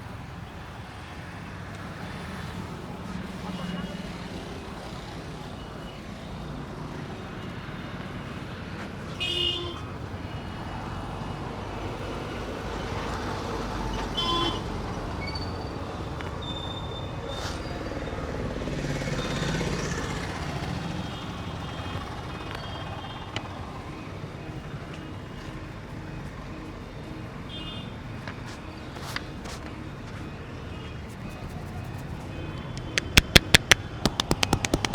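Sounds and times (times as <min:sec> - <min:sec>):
street traffic: 0:00.0 - 0:34.9
vehicle horn toots: 0:14.2 - 0:14.6
vehicle passing: 0:17.8 - 0:22.3
sharp clicks: 0:32.6 - 0:34.9.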